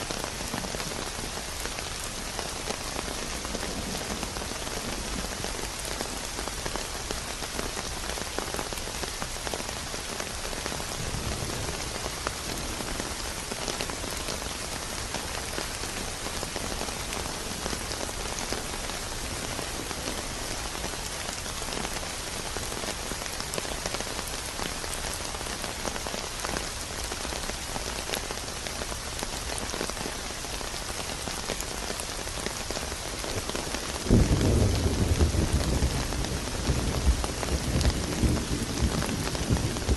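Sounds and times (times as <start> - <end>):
rain pattering: 0.0 - 39.9
low rumble of thunder: 10.6 - 14.4, 34.0 - 39.9.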